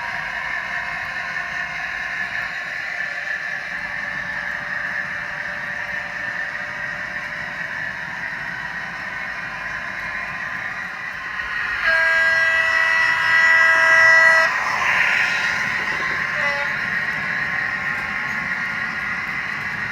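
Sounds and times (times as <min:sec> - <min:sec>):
model locomotive engine sound: 0:00.0 - 0:19.9
locomotive horn: 0:10.8 - 0:17.4.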